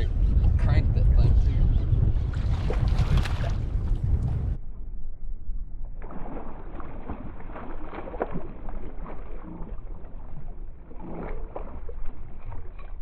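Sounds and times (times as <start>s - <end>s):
wind and water rumbling hiss: 0.0s - 13.0s.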